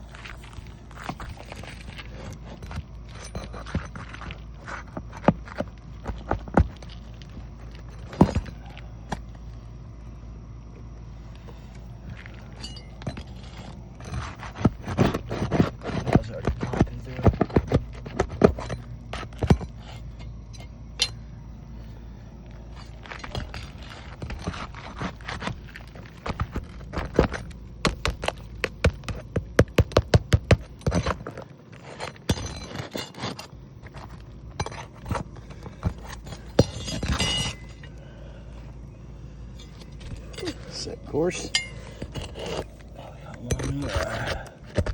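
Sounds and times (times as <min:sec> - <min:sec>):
metal tool knocking under shingles: 0:14.0 - 0:21.2, 0:26.2 - 0:31.4, 0:32.1 - 0:37.9, 0:39.6 - 0:44.9.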